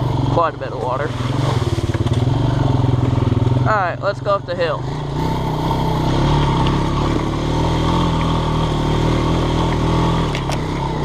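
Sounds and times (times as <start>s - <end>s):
atv engine running under load: 0.0s - 11.0s.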